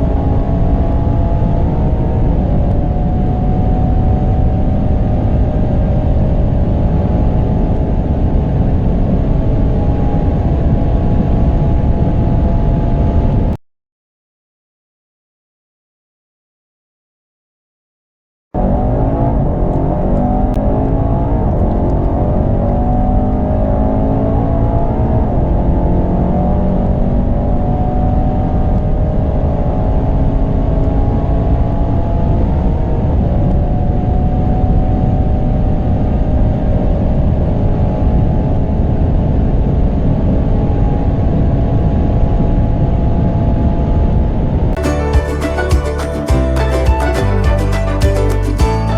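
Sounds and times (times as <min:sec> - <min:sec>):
car engine accelerating hard: 0:00.0 - 0:12.9, 0:18.6 - 0:38.9.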